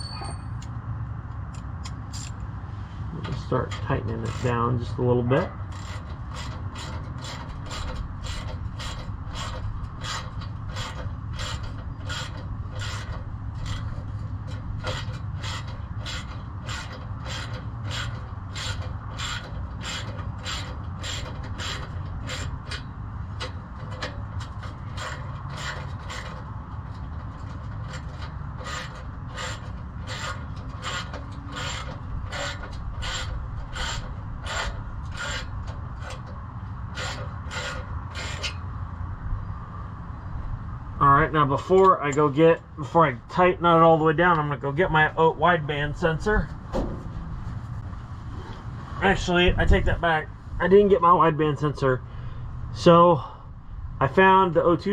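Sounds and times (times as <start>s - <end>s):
hand ratchet clicking: 5.7s - 36.3s.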